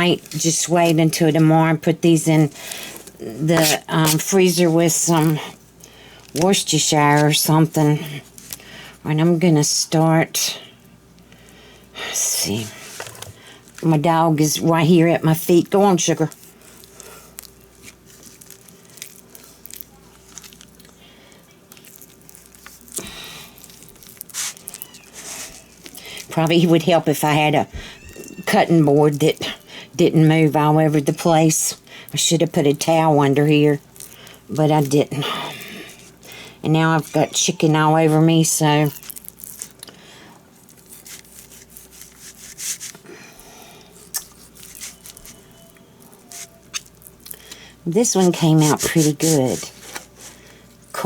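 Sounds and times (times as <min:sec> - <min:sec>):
knife cutting raw meat: 0:44.0 - 0:46.9, 0:48.1 - 0:50.3.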